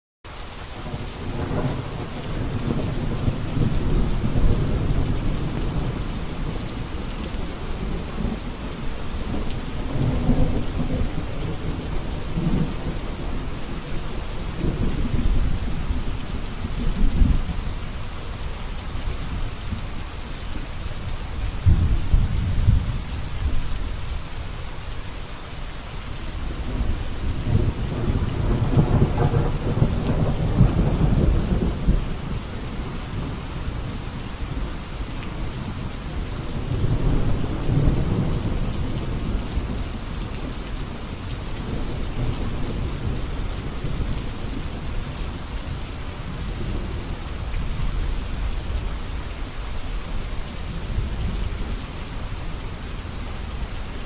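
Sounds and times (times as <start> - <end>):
heavy rain hissing: 0.3 - 54.0
rolling thunder: 1.0 - 17.6, 21.5 - 23.8, 26.5 - 34.7, 35.6 - 40.6.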